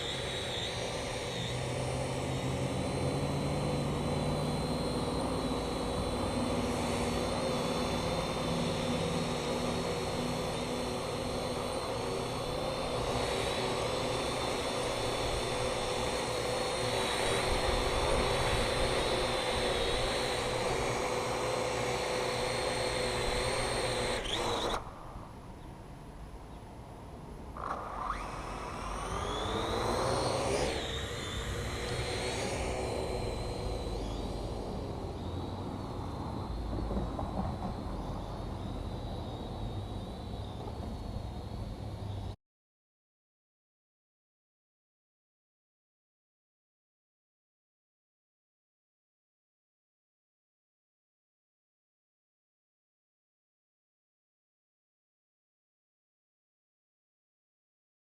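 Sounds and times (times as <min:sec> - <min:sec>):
drone rotors whining: 0:00.0 - 0:25.6, 0:27.5 - 0:42.4.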